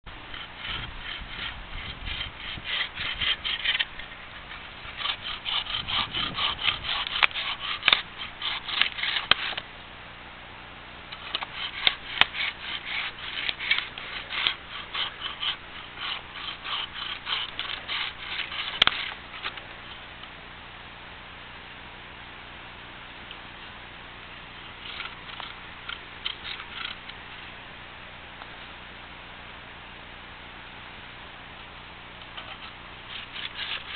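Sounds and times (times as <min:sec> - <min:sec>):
hand saw cutting log: 0:00.2 - 0:09.7, 0:11.2 - 0:19.6, 0:24.8 - 0:27.0, 0:32.4 - 0:33.9.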